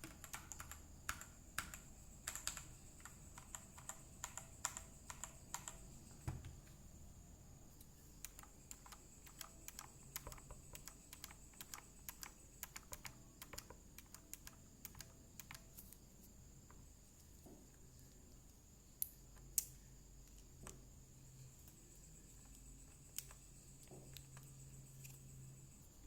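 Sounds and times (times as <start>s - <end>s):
mechanical keyboard typing: 0.0s - 5.8s, 8.2s - 15.7s.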